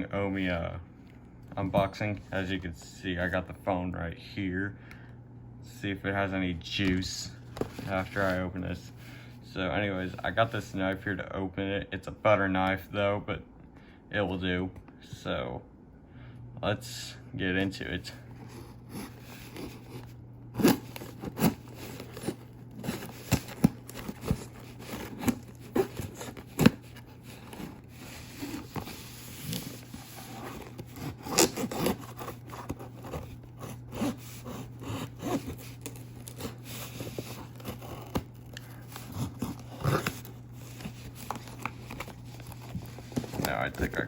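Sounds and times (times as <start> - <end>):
steady low hum: 0.0 - 44.0
knife scraping parcel tape: 18.9 - 44.0.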